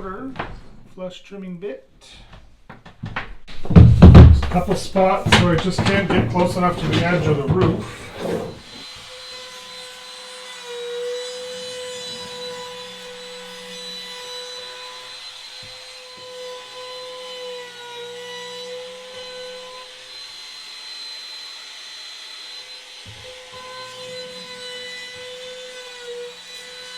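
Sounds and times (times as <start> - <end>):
trim router whining: 4.1 - 16.4.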